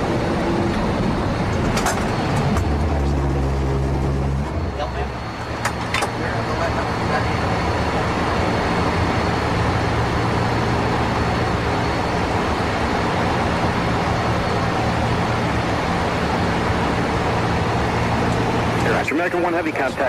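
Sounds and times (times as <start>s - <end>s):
low engine hum: 0.0s - 20.0s.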